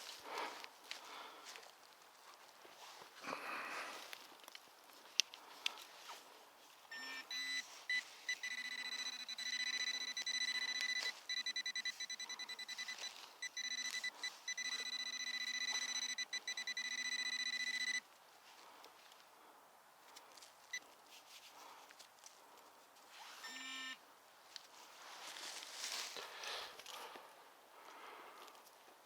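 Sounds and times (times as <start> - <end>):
metal detector pulsing beep: 6.9 - 18.0.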